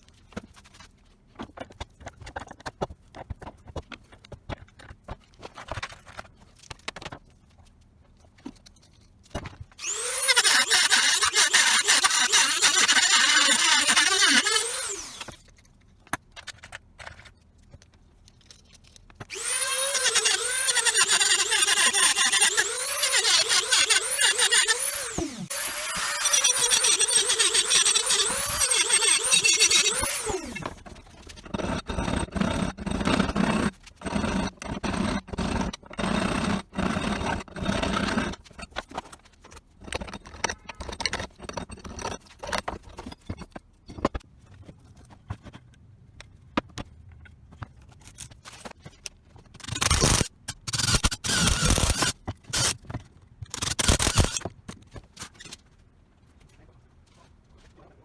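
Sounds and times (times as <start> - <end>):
loud squealing scraping: 9.8 - 15.4, 19.3 - 30.8.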